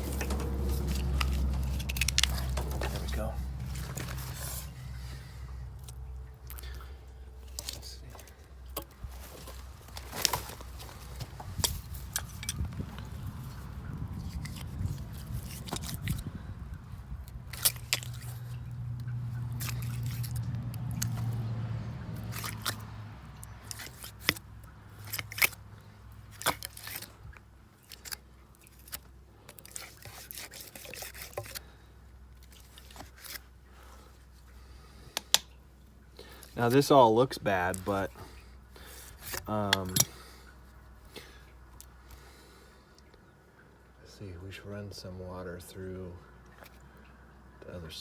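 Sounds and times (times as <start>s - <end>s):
clicks and knocks of pump handling: 0.0s - 4.7s, 39.1s - 40.2s
low steady hum: 0.0s - 48.0s.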